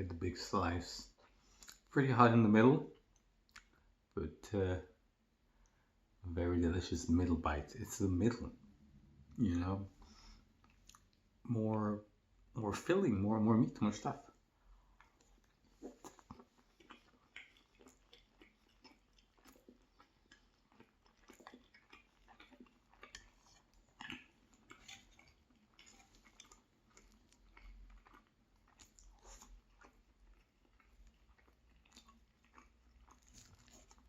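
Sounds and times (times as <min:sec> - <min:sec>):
chewing meat pie: 0:02.8 - 0:04.2, 0:09.4 - 0:12.6, 0:13.9 - 0:34.0
wet mouth clicks: 0:03.5 - 0:03.8, 0:10.6 - 0:11.2
light crunches of pastry: 0:14.9 - 0:34.0.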